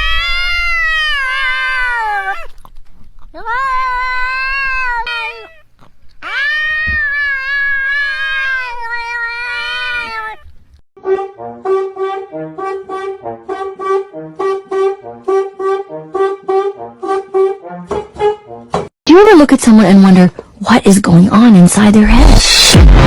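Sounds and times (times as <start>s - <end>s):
cat meowing: 0.0s - 2.6s, 3.4s - 5.6s, 6.2s - 10.5s
brass band music: 11.0s - 18.7s.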